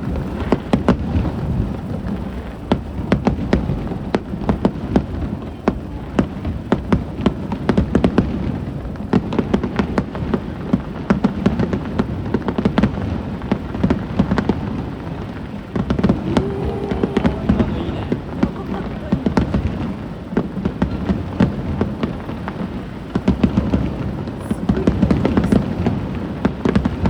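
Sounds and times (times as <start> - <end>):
low rumble of fireworks booms: 0.0 - 27.0
fireworks cracking: 15.8 - 27.0.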